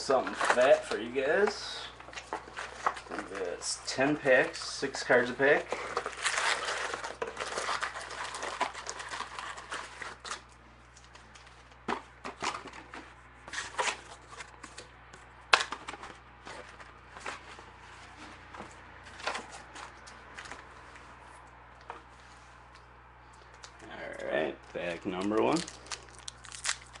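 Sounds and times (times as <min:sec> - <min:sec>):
cardboard and foil packs rustling: 0:00.0 - 0:14.9, 0:15.5 - 0:22.5, 0:23.5 - 0:27.0
plastic wrapper crinkling: 0:00.2 - 0:11.8, 0:23.4 - 0:27.0.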